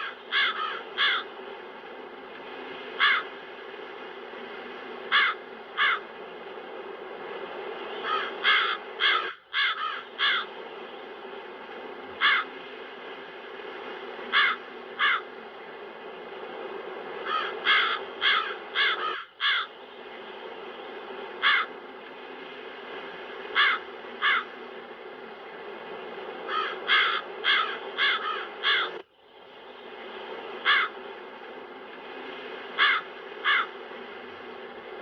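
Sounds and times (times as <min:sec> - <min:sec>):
crows cawing: 0:00.0 - 0:01.4, 0:03.0 - 0:03.4, 0:05.1 - 0:06.1, 0:08.0 - 0:10.5, 0:12.2 - 0:12.6, 0:14.3 - 0:15.3, 0:17.2 - 0:19.7, 0:21.4 - 0:21.8, 0:23.5 - 0:24.5, 0:26.4 - 0:29.0, 0:30.6 - 0:31.0, 0:32.8 - 0:33.8.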